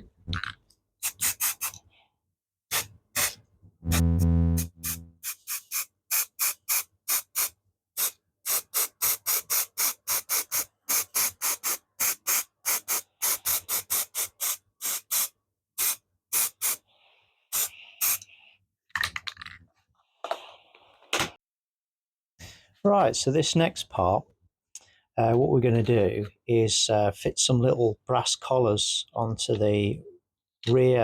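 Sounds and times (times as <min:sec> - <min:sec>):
spray paint can bursts: 0:01.0 - 0:01.8, 0:02.7 - 0:16.8.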